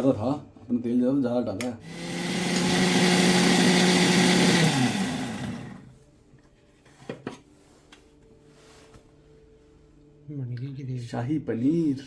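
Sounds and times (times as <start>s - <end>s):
mixer grinder motor winding down: 1.8s - 5.9s.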